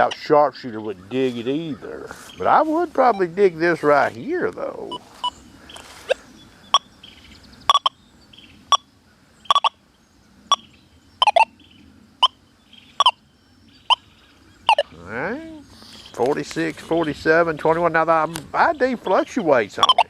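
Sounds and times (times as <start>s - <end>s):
metal detector beeps: 19.8s - 20.0s.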